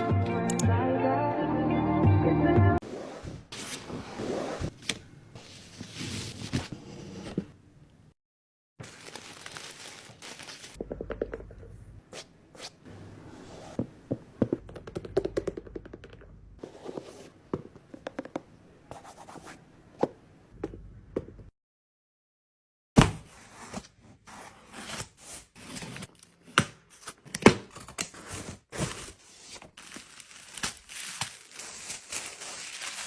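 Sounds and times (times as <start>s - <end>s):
card and paper rustling: 8.8s - 10.8s, 28.3s - 33.0s.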